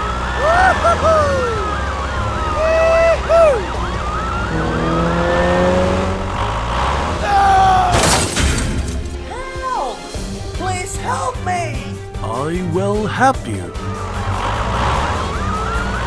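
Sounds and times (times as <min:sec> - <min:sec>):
police siren wailing: 0:00.0 - 0:08.1, 0:12.6 - 0:16.0.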